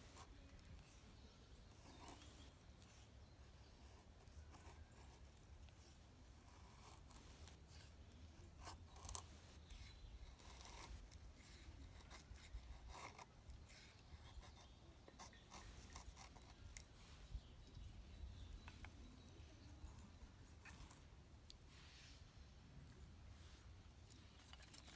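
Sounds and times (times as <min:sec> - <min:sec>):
blade cutting and scraping wood: 0:00.0 - 0:05.8, 0:06.4 - 0:17.0.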